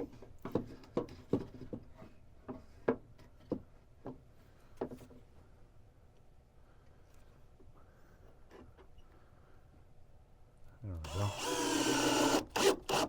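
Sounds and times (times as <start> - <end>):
light knocks and clatters: 0.0 - 5.3.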